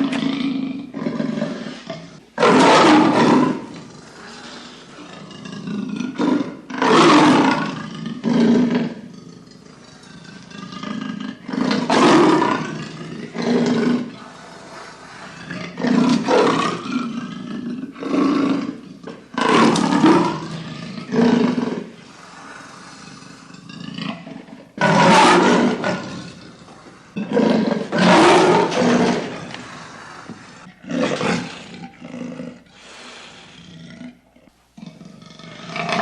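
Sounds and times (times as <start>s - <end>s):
large animal roaring: 15.3s - 32.6s, 34.8s - 36.0s.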